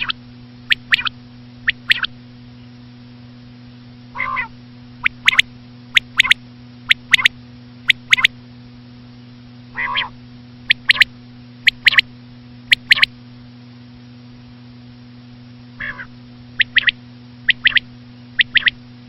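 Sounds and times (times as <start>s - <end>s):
low rasping bird call: 0.0s - 1.1s, 1.7s - 2.1s, 4.1s - 5.4s, 9.7s - 11.1s, 15.8s - 18.8s
quail calling: 0.0s - 2.1s, 4.1s - 5.4s, 6.0s - 7.3s, 7.9s - 8.3s, 9.7s - 11.1s, 11.7s - 12.1s, 12.7s - 13.1s, 15.8s - 18.8s
steady low hum: 0.0s - 19.0s.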